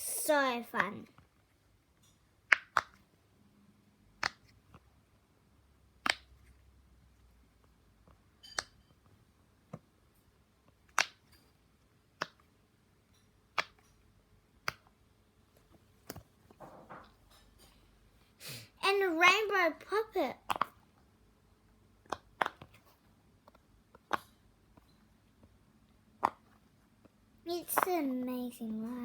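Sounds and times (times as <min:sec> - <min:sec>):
pop-it toy bubbles popping: 0:02.5 - 0:03.0, 0:06.0 - 0:06.4, 0:10.9 - 0:11.3, 0:20.4 - 0:20.8, 0:22.0 - 0:22.8.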